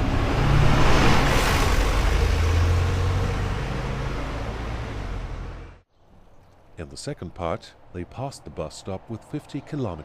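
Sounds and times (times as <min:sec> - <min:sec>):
bus engine accelerating: 0:00.0 - 0:05.8
road noise: 0:00.0 - 0:10.0.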